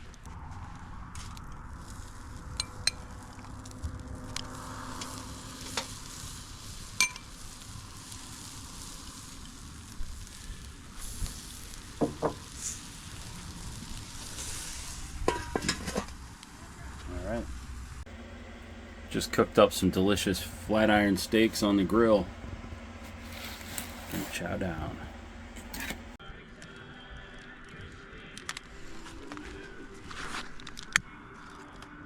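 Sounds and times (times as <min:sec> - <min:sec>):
steaks sizzling on grill: 0:04.4 - 0:16.6, 0:18.1 - 0:26.2.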